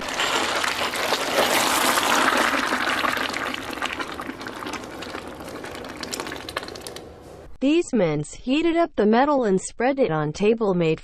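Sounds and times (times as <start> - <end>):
molten metal pouring hiss: 0.0 - 7.1
small crackles: 0.0 - 7.5.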